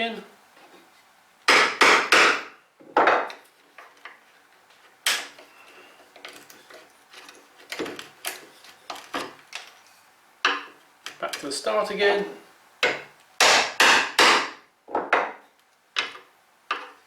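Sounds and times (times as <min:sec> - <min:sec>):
hammer striking chisel in wood: 0:01.5 - 0:03.3, 0:12.8 - 0:15.4.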